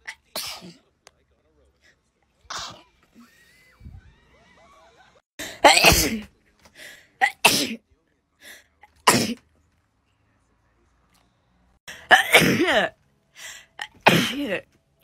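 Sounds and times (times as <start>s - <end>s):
person sneezing: 5.4s - 6.3s, 13.8s - 14.6s.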